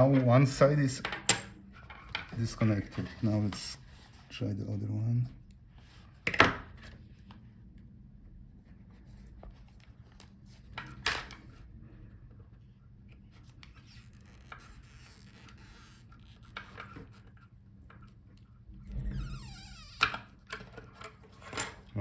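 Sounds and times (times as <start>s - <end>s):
light rubbing and scraping: 1.8s - 4.6s.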